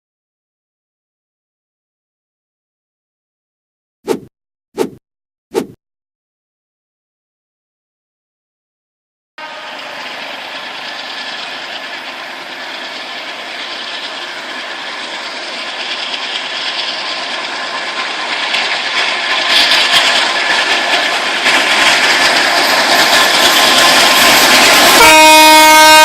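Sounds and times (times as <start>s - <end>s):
train rumble and hiss: 9.4s - 26.0s.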